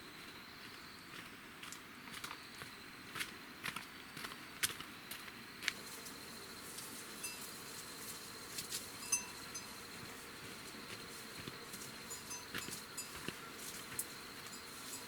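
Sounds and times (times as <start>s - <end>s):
high-pitched insect trill: 5.8s - 15.0s.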